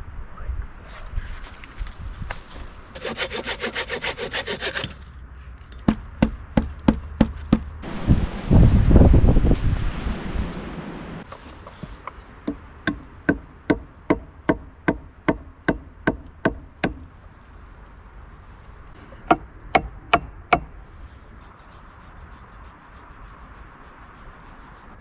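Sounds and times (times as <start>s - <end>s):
tool knocking on wood: 5.8s - 7.7s.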